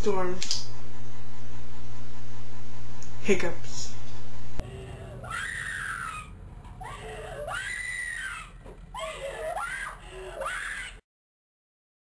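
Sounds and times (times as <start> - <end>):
people talking: 3.2 - 4.0, 9.0 - 10.5
person screaming: 4.6 - 11.0.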